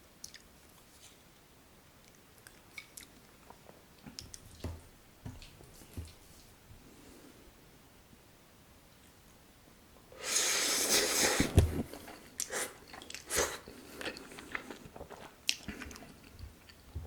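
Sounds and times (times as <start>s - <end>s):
chewing with mouth clicks: 0.2s - 0.5s, 11.9s - 16.9s
noodles slurping: 10.2s - 16.2s.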